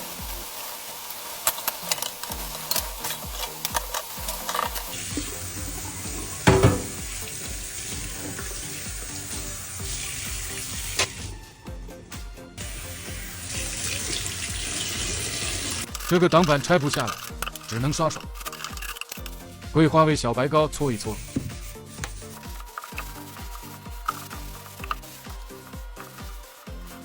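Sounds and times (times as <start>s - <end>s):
tap water splashing in sink: 4.9s - 11.3s
sharp knock: 6.5s - 7.1s
background music with beat: 10.8s - 13.5s, 21.2s - 27.0s.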